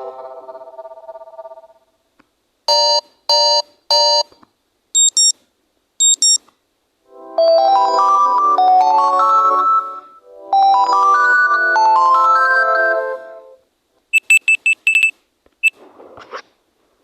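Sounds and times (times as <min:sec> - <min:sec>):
short high beeps: 0:05.0 - 0:05.3, 0:06.0 - 0:06.4, 0:14.2 - 0:15.2
synthesized ringtone melody: 0:05.0 - 0:05.3, 0:06.0 - 0:06.4.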